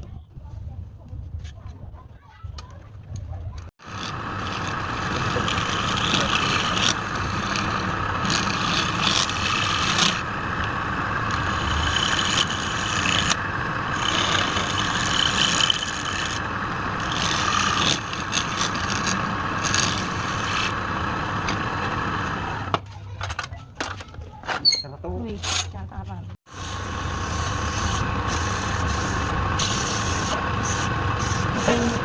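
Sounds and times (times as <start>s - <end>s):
turning tool scraping wood: 3.8s - 22.6s, 26.5s - 32.0s
wood lathe running: 3.8s - 22.7s, 26.5s - 32.0s.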